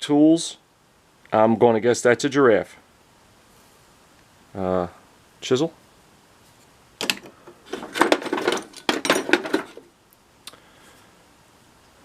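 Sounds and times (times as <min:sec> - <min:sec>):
metal tools clattering in toolbox: 0:07.0 - 0:09.9.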